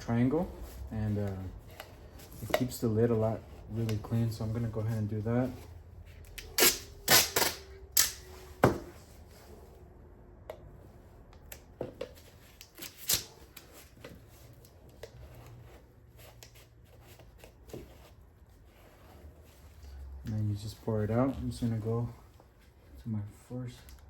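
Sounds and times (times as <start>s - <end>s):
tape ripping off roll: 6.4s - 8.3s, 12.6s - 13.6s.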